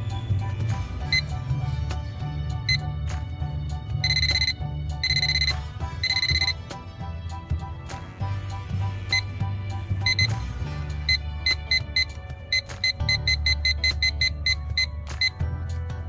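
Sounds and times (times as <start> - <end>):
background music: 0.0 - 16.0
alarm clock beeping: 1.0 - 1.4, 2.7 - 2.9, 4.0 - 6.7, 10.0 - 10.4, 11.1 - 15.4.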